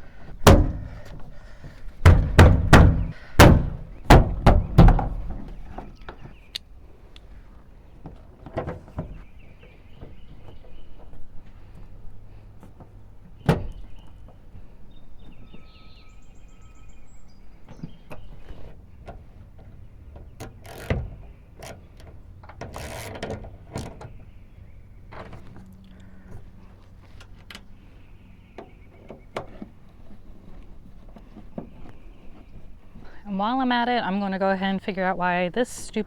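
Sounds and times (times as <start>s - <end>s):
door hardware clicks and knocks: 0.4s - 1.2s, 2.0s - 6.2s
scraping rustle: 17.1s - 33.3s.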